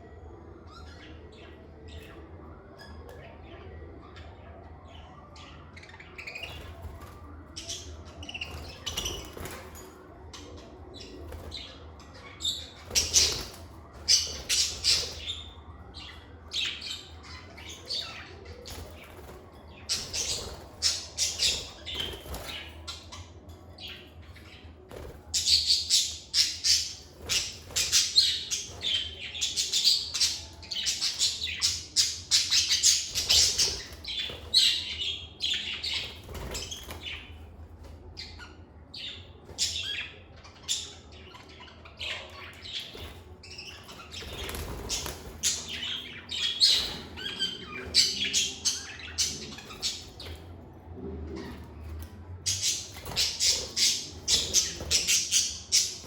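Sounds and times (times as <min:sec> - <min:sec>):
lovebirds chirping: 0:04.8 - 0:37.4, 0:38.1 - 0:50.6, 0:51.4 - 0:56.0.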